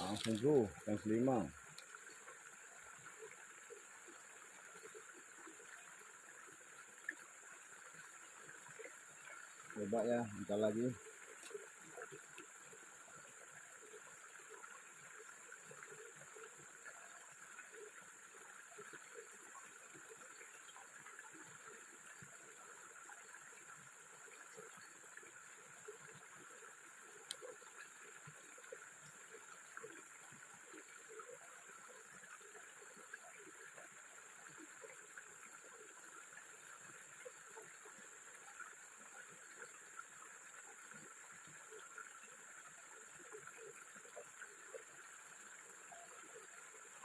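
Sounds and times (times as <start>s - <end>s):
steady high hiss: 0.0s - 1.5s
stream water gurgling: 0.0s - 47.0s.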